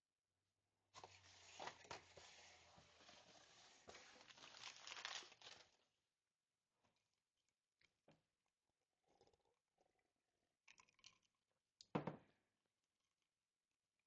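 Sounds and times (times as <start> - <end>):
packaging crinkling and tearing: 2.9 - 5.8.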